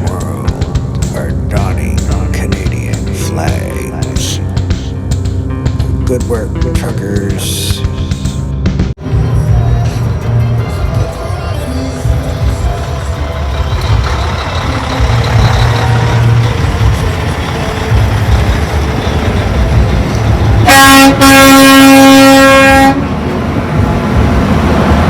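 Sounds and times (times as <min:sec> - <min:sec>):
low rumble: 0:07.8 - 0:21.3, 0:22.7 - 0:25.0
vehicle horn honking: 0:20.6 - 0:23.2.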